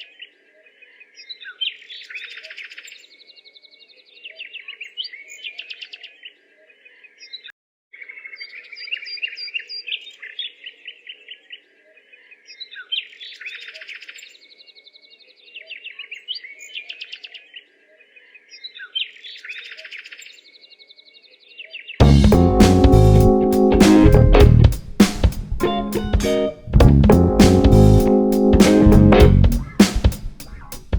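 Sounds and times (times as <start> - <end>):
birds chirping and singing: 0.0 - 23.7
loud guitar music: 22.0 - 30.9.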